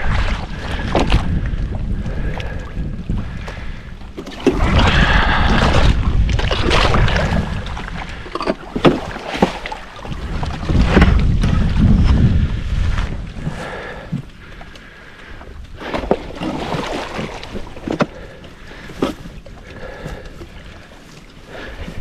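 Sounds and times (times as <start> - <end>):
water sloshing: 0.0 - 22.0
wind rumbling on microphone: 0.0 - 22.0.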